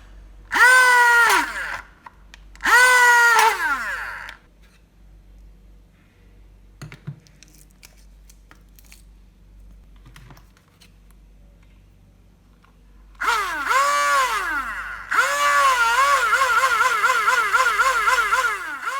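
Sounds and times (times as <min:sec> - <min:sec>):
small motor whining: 0:00.5 - 0:01.9, 0:02.6 - 0:04.5, 0:13.2 - 0:18.9.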